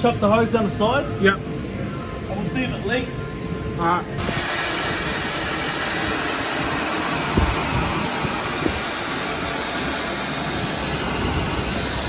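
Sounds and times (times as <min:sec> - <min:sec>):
hose spraying water: 0:04.2 - 0:12.0.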